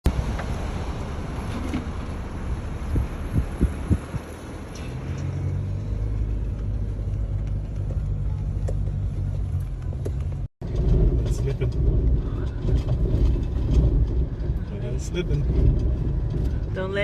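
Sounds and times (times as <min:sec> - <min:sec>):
car driving on sand: 0:00.1 - 0:17.0
low thumps: 0:02.8 - 0:04.4, 0:06.2 - 0:17.0.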